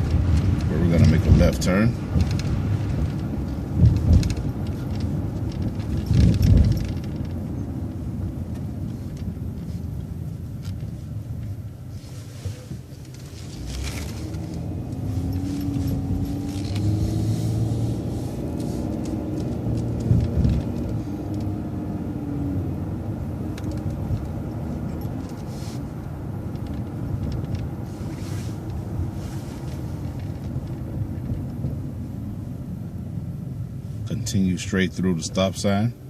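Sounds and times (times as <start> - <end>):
bus engine rumble: 0.0 - 36.0
engine whine rising in pitch: 13.1 - 30.0.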